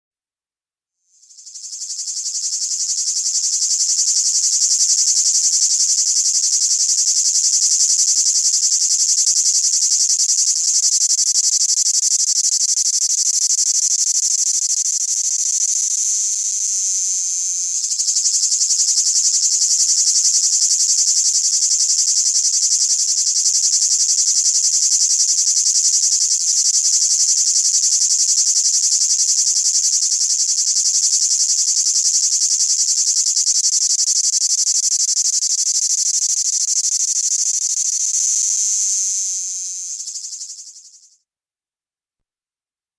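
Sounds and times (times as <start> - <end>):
cicada buzzing: 1.2 - 41.0.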